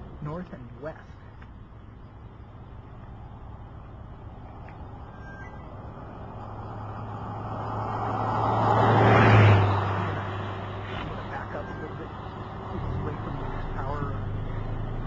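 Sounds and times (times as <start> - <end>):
vehicle driving past: 4.2 - 15.0.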